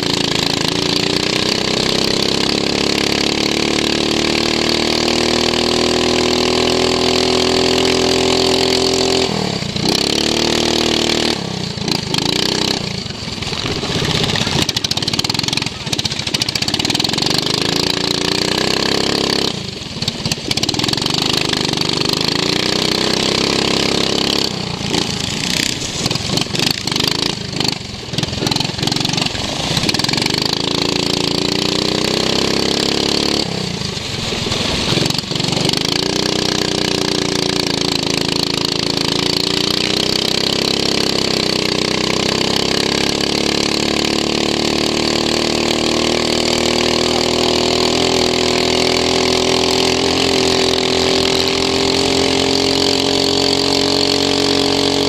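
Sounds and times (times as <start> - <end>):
lawn mower engine revving: 0.0 - 55.0.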